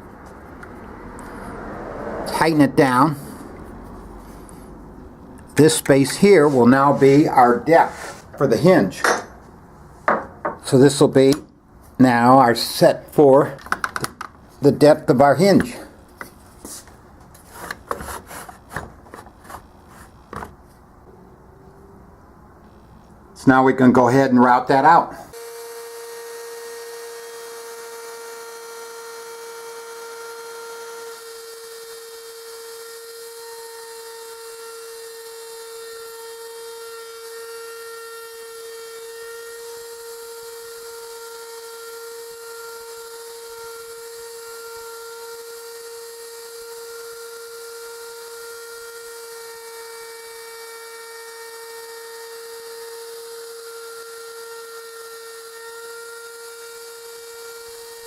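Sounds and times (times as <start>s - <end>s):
wood router high whine: 24.8s - 58.0s.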